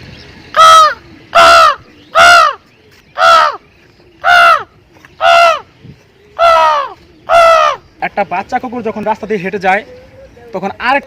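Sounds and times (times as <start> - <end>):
man imitating crow caws: 6.4 - 7.8.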